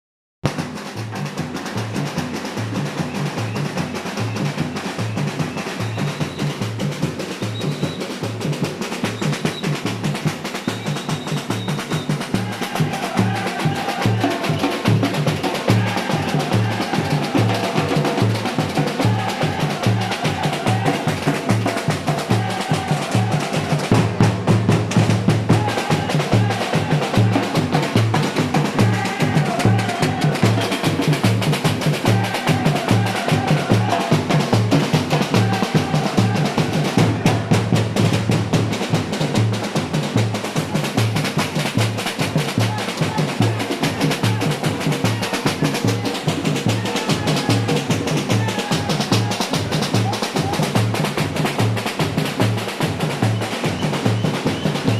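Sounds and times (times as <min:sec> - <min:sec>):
percussion ensemble groove: 0:00.4 - 0:54.9
deep bass drums beating: 0:11.6 - 0:54.9.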